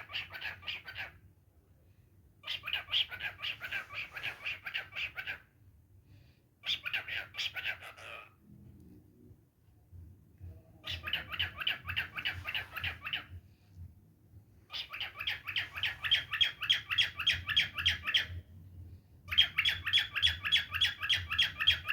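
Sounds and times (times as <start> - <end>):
parrot squawking: 0.0 - 1.2, 2.4 - 5.5, 6.6 - 8.4, 10.8 - 13.3, 14.7 - 18.4, 19.3 - 21.9.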